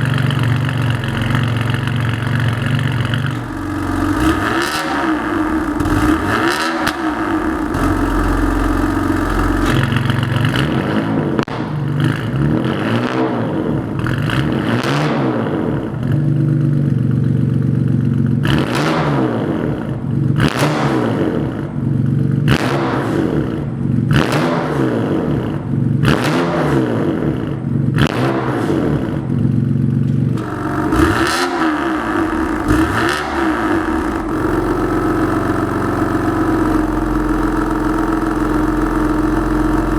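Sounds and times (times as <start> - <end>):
car engine revving: 0.0 - 16.7, 30.3 - 39.9
exhaust cracks: 0.0 - 24.4, 27.4 - 39.9.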